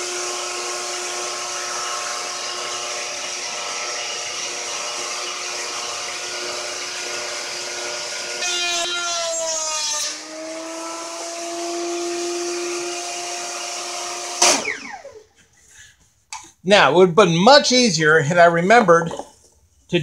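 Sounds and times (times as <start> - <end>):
router whining: 0.0 - 15.3.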